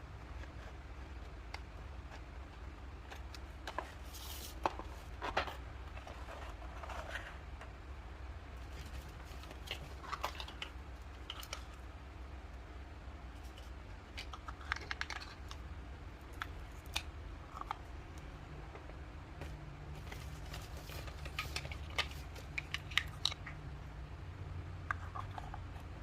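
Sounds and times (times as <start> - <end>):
steady low hum: 0.0 - 26.0
plastic pieces clicking and tapping: 14.1 - 15.6, 21.2 - 23.6.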